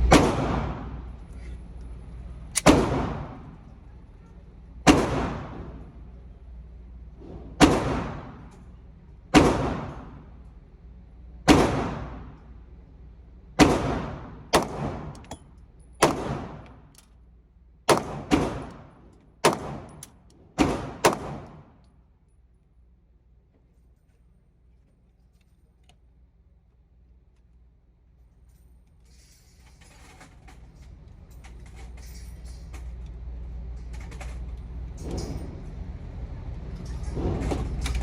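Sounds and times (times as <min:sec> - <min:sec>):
pistol shots echoing: 0:02.6 - 0:03.4, 0:11.5 - 0:12.3, 0:13.6 - 0:15.3, 0:16.0 - 0:16.7, 0:17.9 - 0:21.7.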